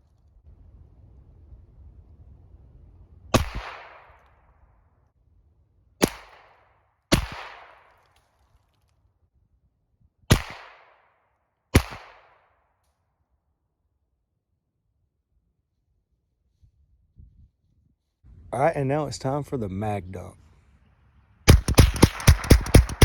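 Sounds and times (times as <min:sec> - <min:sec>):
rifle shots with echo: 0:03.3 - 0:04.5, 0:06.0 - 0:08.2, 0:10.3 - 0:12.6, 0:21.5 - 0:23.0.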